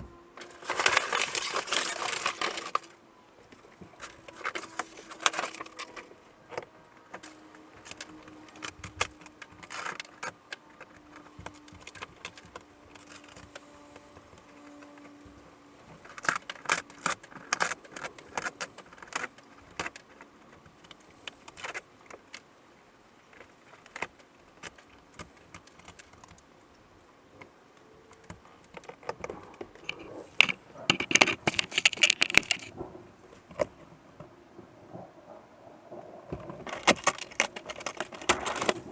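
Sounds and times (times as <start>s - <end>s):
ceiling board cracking and snapping: 0.4s - 3.0s, 3.6s - 6.7s, 7.8s - 13.6s, 16.0s - 22.4s, 23.3s - 26.4s, 36.0s - 38.9s.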